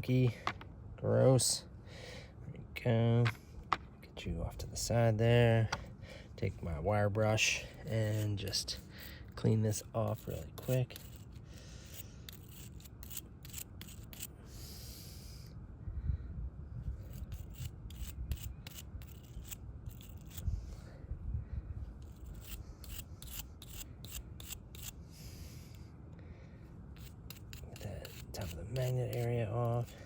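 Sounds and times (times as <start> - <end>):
wire brush scrubbing metal: 7.3 - 14.3, 27.0 - 30.0.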